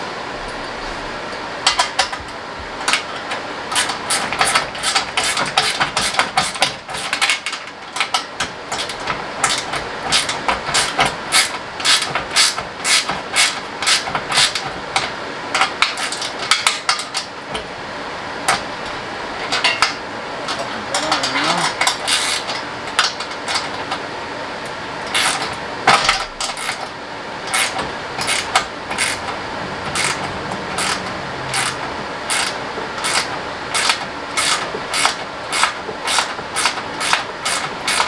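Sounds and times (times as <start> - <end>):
steady background hum: 0.0 - 38.0.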